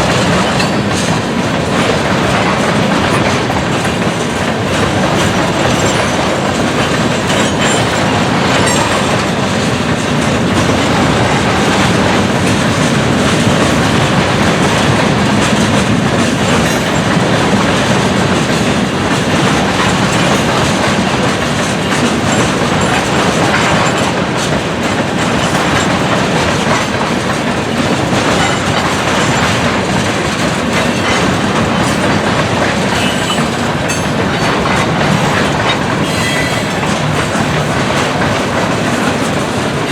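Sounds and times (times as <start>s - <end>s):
train wheels on rails: 0.0s - 39.9s.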